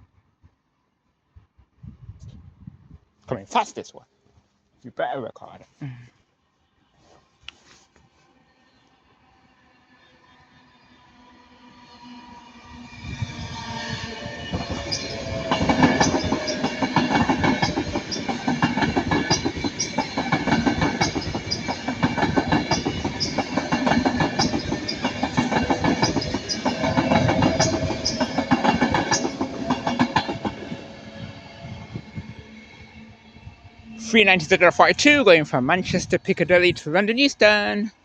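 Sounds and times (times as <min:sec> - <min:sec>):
electric train passing at speed: 0:08.2 - 0:38.0
wheels clattering over rail joints: 0:14.8 - 0:30.7.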